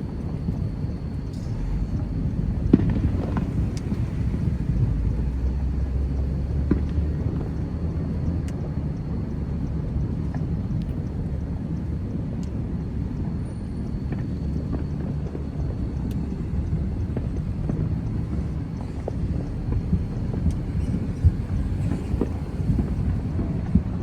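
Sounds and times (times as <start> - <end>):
distant fireworks rumble: 0.0 - 24.0
fireworks cracks: 1.5 - 4.6.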